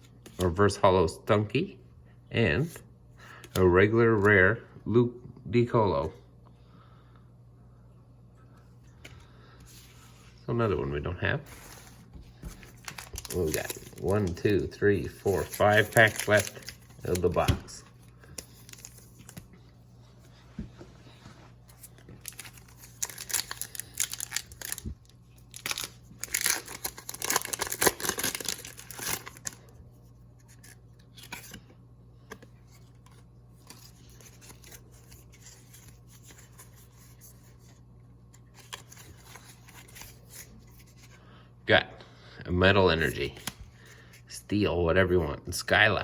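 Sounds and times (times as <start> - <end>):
foil wrapper crinkling and tearing: 12.7 - 19.5, 21.8 - 29.7.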